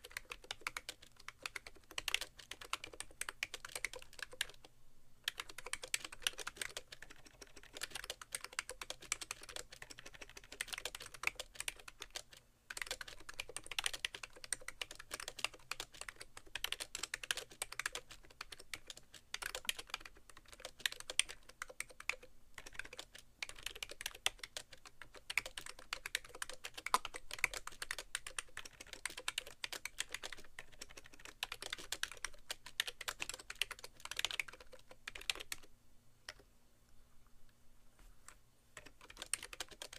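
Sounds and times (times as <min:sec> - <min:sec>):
hollow keyboard keystrokes: 0:05.3 - 0:35.7, 0:38.8 - 0:39.9.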